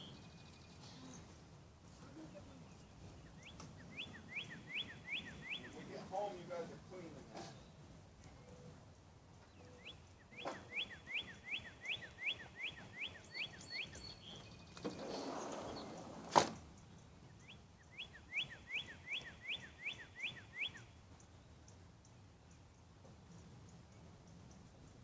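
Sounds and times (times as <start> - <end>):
bird whistling song: 3.1 - 6.0, 9.5 - 16.1, 17.3 - 21.4.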